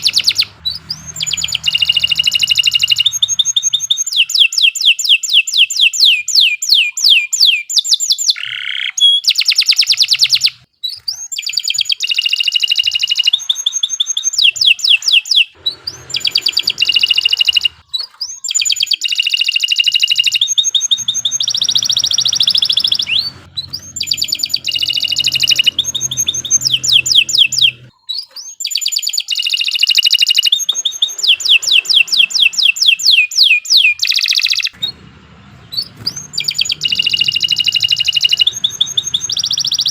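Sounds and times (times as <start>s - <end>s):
canary singing trills: 0.0s - 39.9s.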